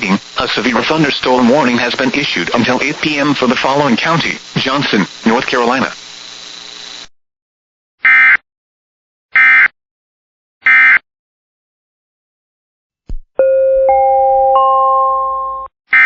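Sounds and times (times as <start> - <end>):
digital data tone bursts: 0.0 - 7.0.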